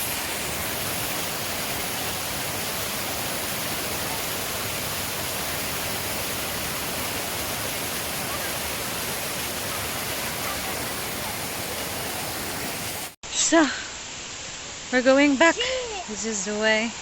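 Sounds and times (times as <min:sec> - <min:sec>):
waterfall rushing: 0:00.0 - 0:13.2.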